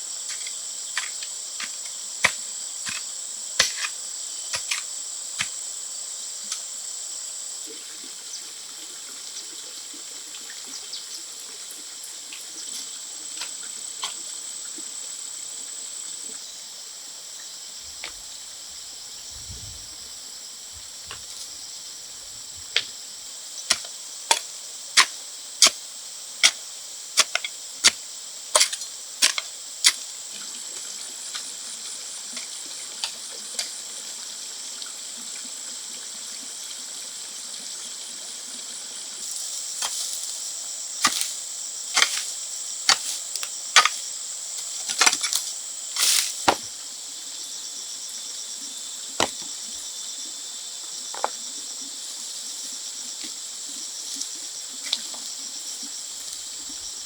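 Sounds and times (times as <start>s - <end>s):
insects trilling: 0.0s - 57.0s
sharp knocks: 46.5s - 46.7s, 49.2s - 49.5s.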